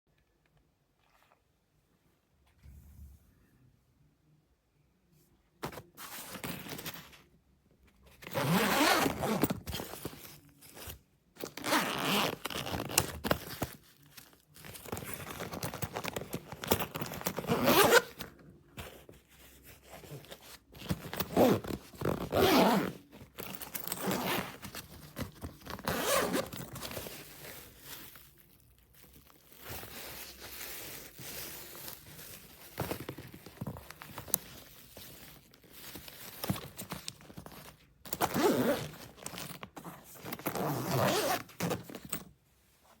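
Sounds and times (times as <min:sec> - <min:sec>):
bag fabric rustling: 0:08.1 - 0:43.0
zipper pulled open and shut: 0:08.2 - 0:13.7, 0:14.6 - 0:18.3, 0:19.6 - 0:28.2, 0:29.5 - 0:42.3.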